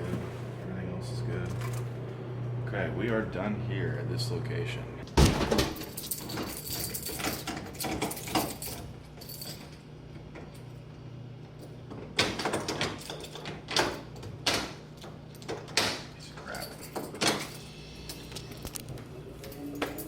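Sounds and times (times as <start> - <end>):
steady low hum: 0.0 - 12.2
door and keys clattering: 5.1 - 10.9, 11.5 - 20.0.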